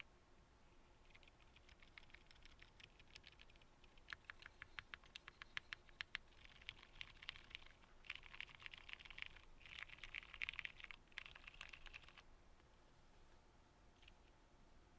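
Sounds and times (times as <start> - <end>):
soft keyboard keystrokes: 1.1 - 12.2.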